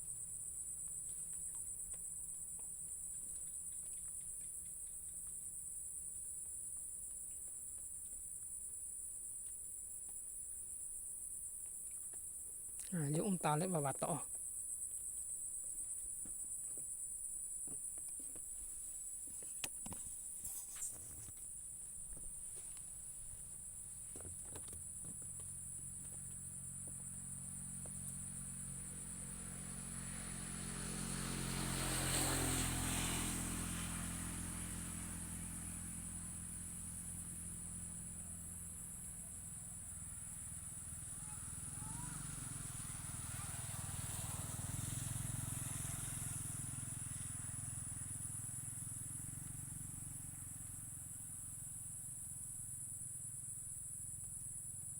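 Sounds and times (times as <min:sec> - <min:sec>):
insect chorus: 0:00.0 - 0:54.9
vehicle passing: 0:25.0 - 0:51.6.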